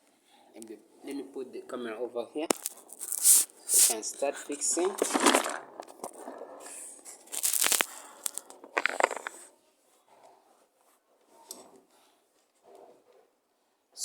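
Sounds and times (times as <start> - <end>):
camera handling rustling and scraping: 2.5 - 9.5.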